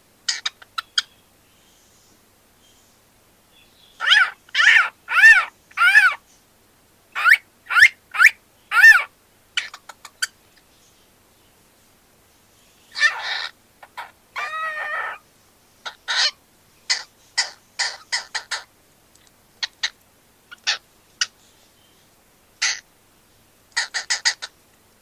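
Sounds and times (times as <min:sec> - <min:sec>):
cockatiel calling: 0:00.3 - 0:01.2, 0:04.0 - 0:06.2, 0:07.1 - 0:10.3, 0:12.9 - 0:15.2, 0:15.8 - 0:18.7, 0:19.6 - 0:21.3, 0:22.6 - 0:22.8, 0:23.8 - 0:24.5
cockatiel chirps: 0:00.3 - 0:01.2, 0:04.0 - 0:06.2, 0:07.2 - 0:10.4, 0:12.9 - 0:15.2, 0:15.8 - 0:18.7, 0:23.8 - 0:24.5.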